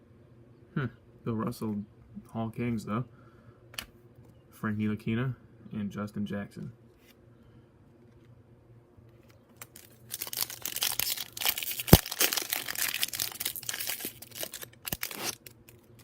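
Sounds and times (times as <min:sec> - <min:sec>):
wrapper crinkling: 0:09.5 - 0:16.0
foil card pack tearing: 0:09.6 - 0:16.0.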